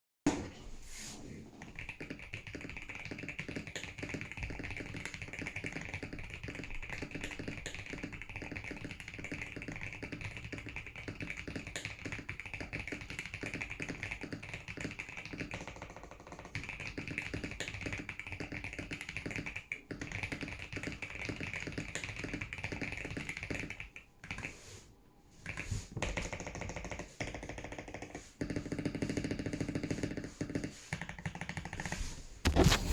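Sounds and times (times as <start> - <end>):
mechanical keyboard typing: 1.7 - 24.4.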